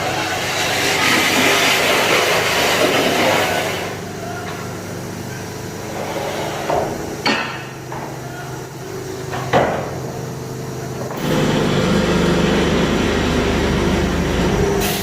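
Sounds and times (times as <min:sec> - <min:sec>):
loud hissing: 0:14.7 - 0:15.0.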